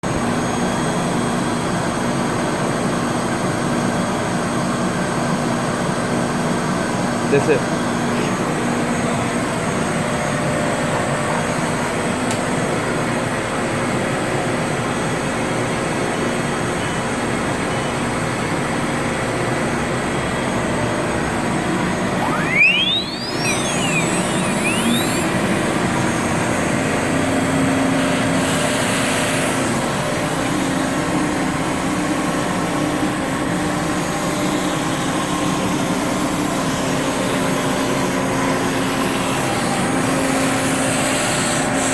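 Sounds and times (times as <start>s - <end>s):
cnc router running: 21.9s - 33.1s
spindle whine rising in pitch: 22.0s - 26.0s
faint gliding tones: 22.1s - 25.4s
faint steady tones: 22.2s - 25.6s.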